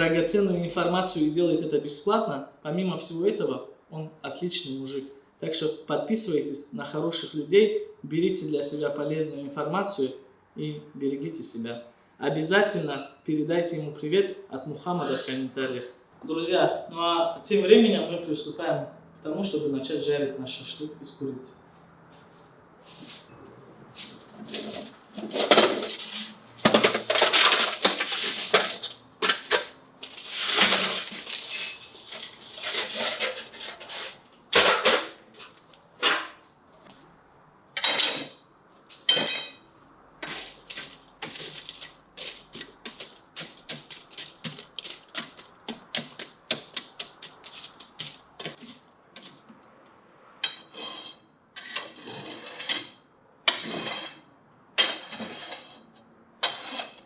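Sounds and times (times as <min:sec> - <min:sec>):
rustling handling noise: 0:23.9 - 0:37.4, 0:38.2 - 0:49.8
metal skewers clinking: 0:39.1 - 0:46.2.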